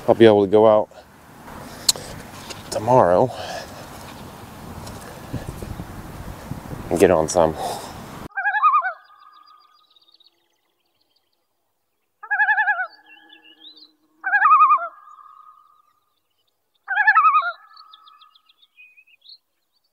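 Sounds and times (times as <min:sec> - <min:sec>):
small birds chirping: 0:00.2 - 0:19.9
loon tremolo call: 0:08.3 - 0:10.5, 0:12.2 - 0:15.9.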